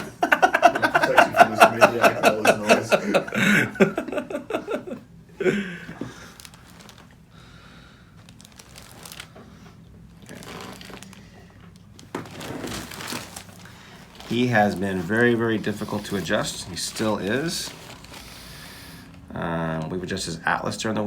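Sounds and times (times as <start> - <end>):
voices: 0.0 - 5.8, 14.3 - 17.8
rustling and crinkling: 5.9 - 7.4, 8.1 - 19.3.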